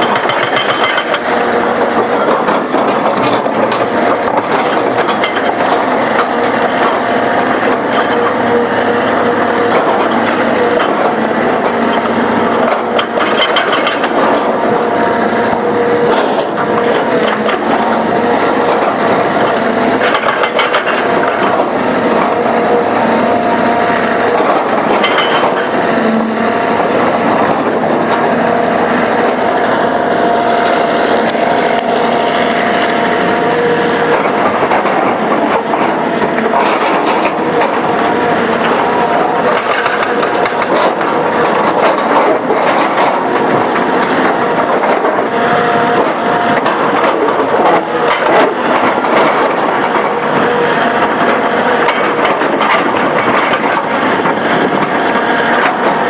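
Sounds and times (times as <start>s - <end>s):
metal clanks and rattles: 0.0s - 8.4s, 9.6s - 14.8s, 15.5s - 23.4s, 24.2s - 29.8s, 34.0s - 45.3s, 46.0s - 56.0s
excavator engine and hydraulics whine: 0.0s - 56.0s.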